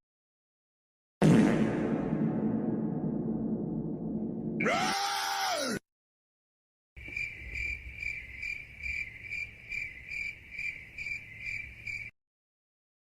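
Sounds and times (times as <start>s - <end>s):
cricket trilling: 7.0s - 12.1s.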